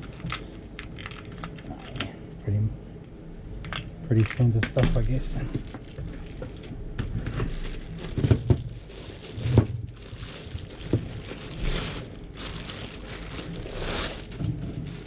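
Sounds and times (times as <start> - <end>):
packaging crinkling: 5.0 - 15.0.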